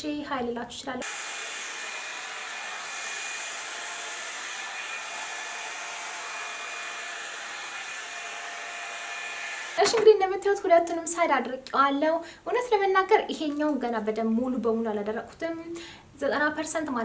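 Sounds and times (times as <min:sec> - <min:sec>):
hot-air brush dryer running: 0:01.0 - 0:09.8.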